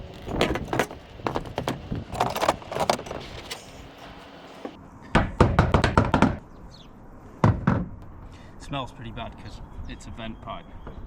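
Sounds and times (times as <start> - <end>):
knocks and rattles on a tin roof: 0.3 - 3.2, 5.3 - 6.4, 7.4 - 7.9.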